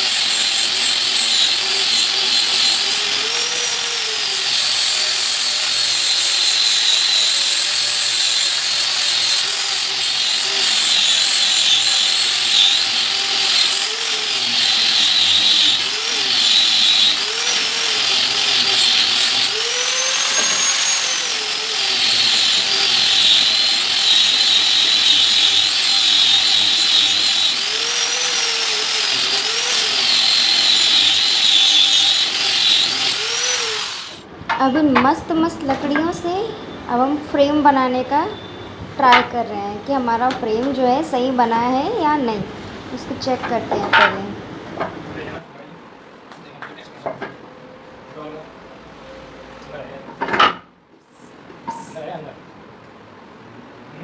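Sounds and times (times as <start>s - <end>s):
power tool motor whining: 0.0s - 34.3s.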